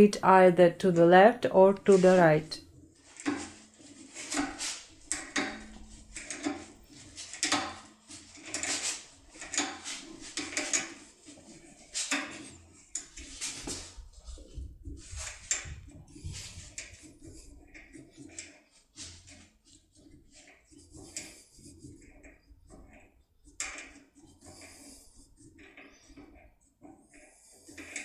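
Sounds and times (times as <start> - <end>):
metallic scraping and clicking: 3.0 - 13.9.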